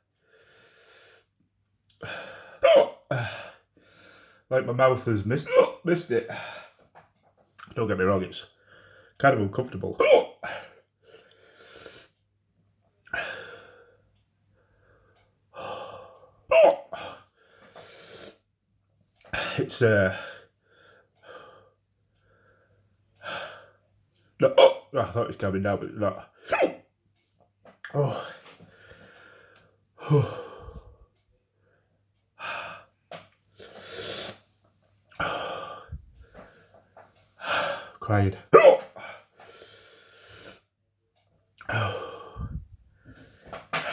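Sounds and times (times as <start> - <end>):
man breathing hard and gasping: 28.0 - 31.2, 31.8 - 34.4, 35.1 - 38.0, 41.6 - 43.9.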